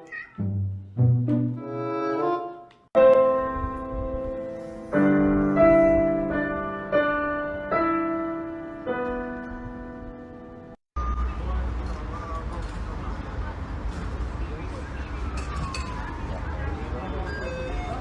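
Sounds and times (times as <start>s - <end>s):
slow piano chords: 3.0s - 10.8s.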